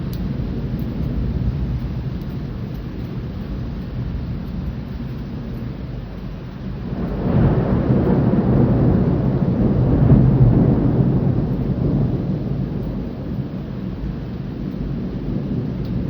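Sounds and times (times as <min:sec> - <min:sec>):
thunder rolling: 0:00.0 - 0:16.0.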